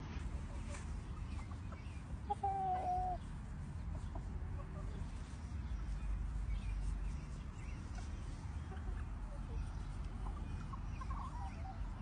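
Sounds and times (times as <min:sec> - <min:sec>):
chicken calling: 0:01.4 - 0:03.2.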